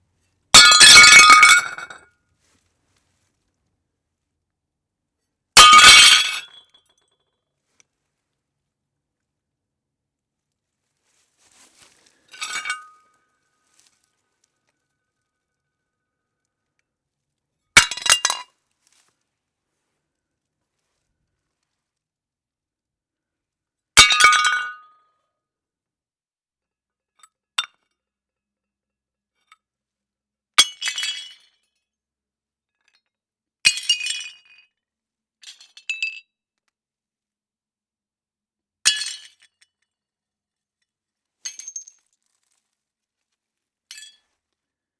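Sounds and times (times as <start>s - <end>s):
ceramic plates smashing: 0.6s - 2.0s, 5.6s - 6.5s.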